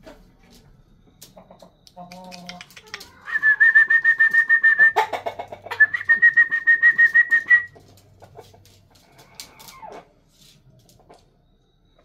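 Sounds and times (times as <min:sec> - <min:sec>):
bird trilling whistled notes: 0:03.2 - 0:05.0, 0:05.8 - 0:07.8.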